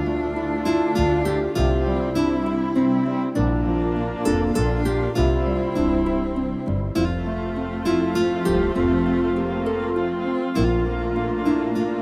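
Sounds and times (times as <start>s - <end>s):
gentle instrumental with plucked notes: 0.0s - 12.0s.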